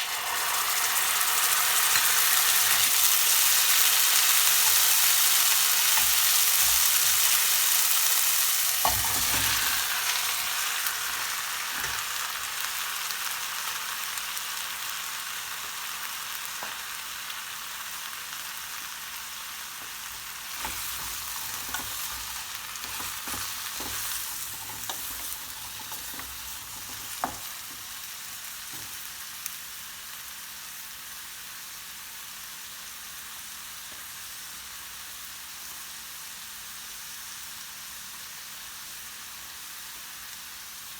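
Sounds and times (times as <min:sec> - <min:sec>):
food sizzling in hot oil: 0:00.0 - 0:40.9
spatula tapping and scraping pan: 0:04.4 - 0:07.5, 0:08.8 - 0:09.9, 0:11.7 - 0:12.1, 0:19.8 - 0:28.0, 0:28.7 - 0:29.1.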